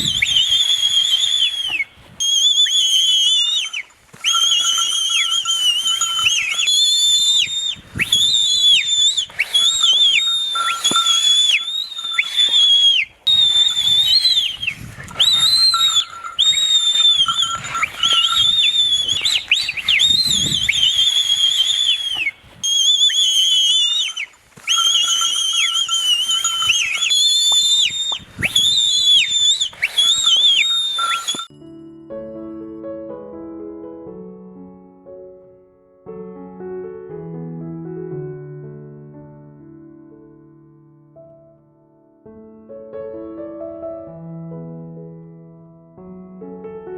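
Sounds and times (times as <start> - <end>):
shrill warbling whistle blasts: 0.0 - 31.5.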